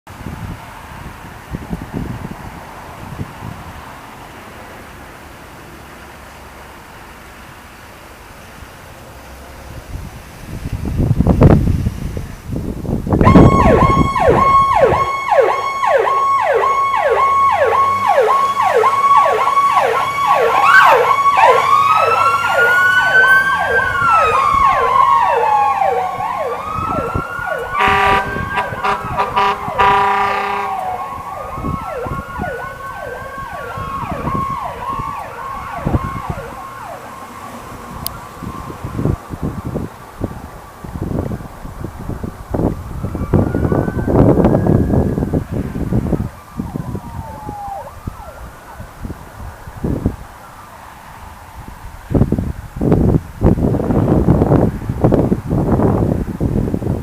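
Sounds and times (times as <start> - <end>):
ambulance siren yelping: 13.2 - 41.1, 42.3 - 51.2
air horn blasts: 13.3 - 22.8, 27.7 - 31.8.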